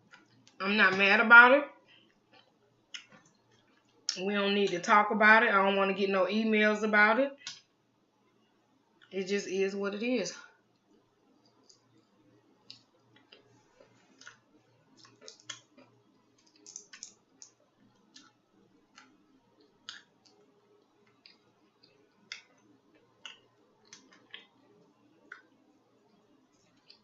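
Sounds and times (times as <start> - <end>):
wet chewing and lip smacking: 2.2 - 4.1, 10.8 - 27.0.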